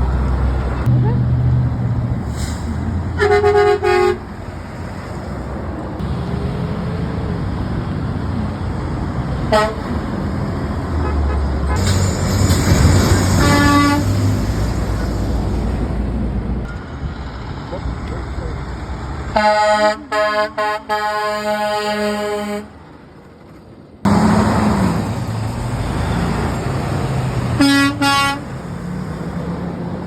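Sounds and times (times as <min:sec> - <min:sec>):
road traffic passing: 0:00.0 - 0:30.0
truck horns honking: 0:02.4 - 0:04.6, 0:09.4 - 0:10.2, 0:10.8 - 0:15.2, 0:19.3 - 0:22.9, 0:25.8 - 0:29.5.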